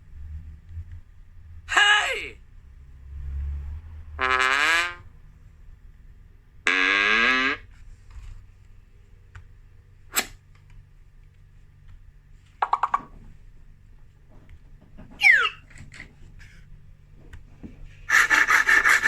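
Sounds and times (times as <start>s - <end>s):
loud buzzing tone: 6.7s - 7.7s
sharp click: 10.1s - 10.4s.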